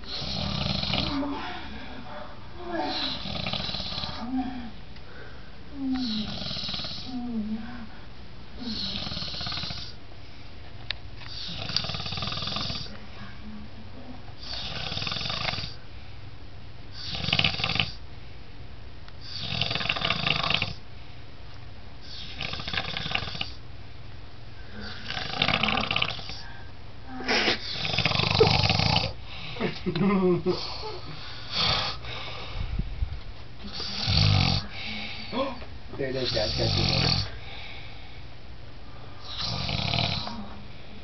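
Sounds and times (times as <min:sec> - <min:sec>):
man snoring loudly: 0:00.0 - 0:01.3, 0:02.9 - 0:04.3, 0:06.0 - 0:07.2, 0:08.6 - 0:10.0, 0:11.3 - 0:12.9, 0:14.4 - 0:15.8, 0:17.0 - 0:18.0, 0:19.2 - 0:20.8, 0:22.1 - 0:23.6, 0:24.8 - 0:26.4, 0:27.5 - 0:29.2, 0:33.7 - 0:34.8, 0:36.2 - 0:37.4, 0:39.2 - 0:40.4.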